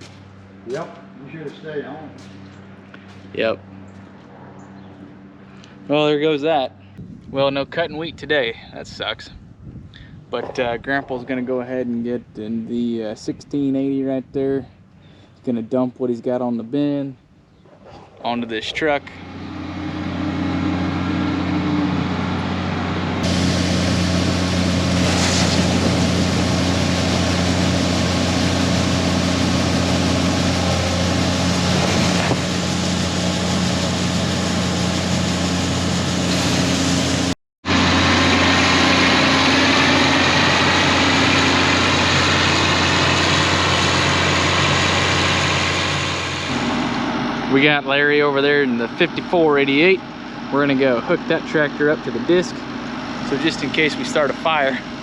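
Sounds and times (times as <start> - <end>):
combine harvester diesel drone: 0.0 - 7.0, 18.2 - 55.0
machinery rushing noise: 18.3 - 49.8, 50.5 - 55.0.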